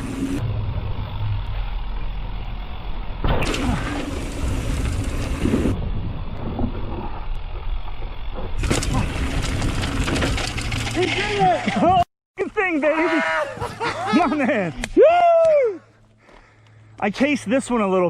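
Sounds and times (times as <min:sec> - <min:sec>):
bike rattling and knocking: 0:08.3 - 0:11.9.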